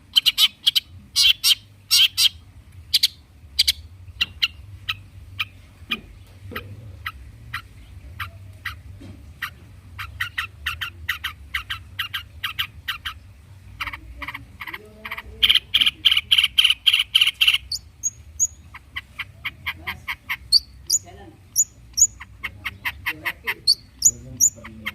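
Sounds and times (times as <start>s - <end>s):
bird harsh clicking chatter: 13.8s - 24.9s.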